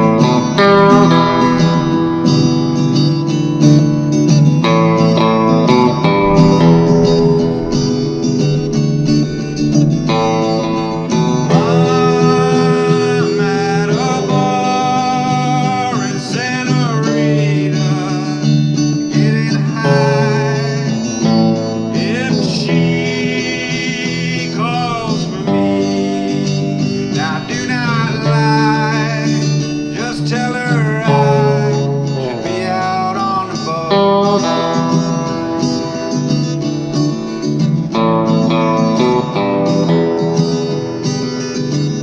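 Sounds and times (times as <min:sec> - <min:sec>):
acoustic guitar music: 0:00.0 - 0:42.0.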